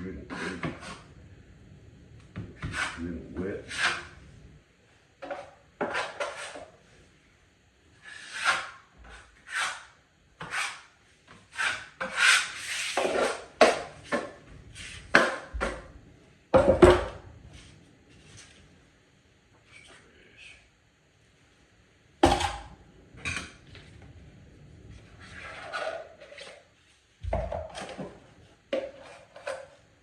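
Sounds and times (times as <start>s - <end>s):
taping knife scraping joint compound: 3.7s - 4.1s, 8.0s - 13.5s.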